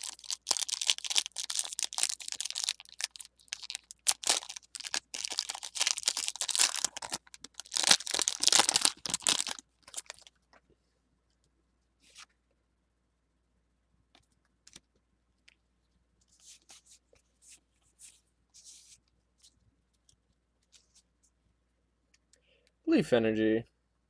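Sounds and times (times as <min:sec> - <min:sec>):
foil wrapper crinkling: 0:00.0 - 0:10.3.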